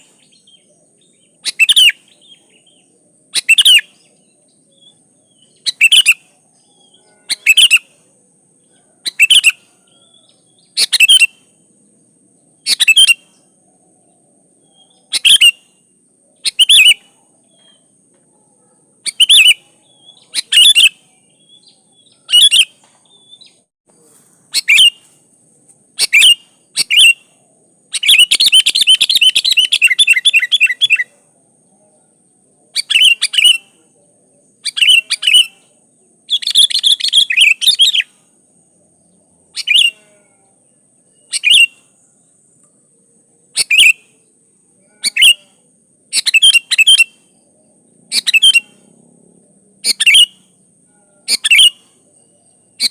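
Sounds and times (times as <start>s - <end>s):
bulbul singing whistled phrases: 0.0s - 11.7s, 12.6s - 18.0s, 19.0s - 23.7s, 24.5s - 25.2s, 26.0s - 31.3s, 32.2s - 38.3s, 39.0s - 40.2s, 40.9s - 42.4s, 43.5s - 44.3s, 44.9s - 48.9s, 49.8s - 52.9s
bird chattering: 1.3s - 4.0s, 5.5s - 6.3s, 9.0s - 11.5s, 19.0s - 23.6s, 24.5s - 25.1s, 26.0s - 27.3s, 48.1s - 48.9s, 49.8s - 50.4s, 51.3s - 51.9s.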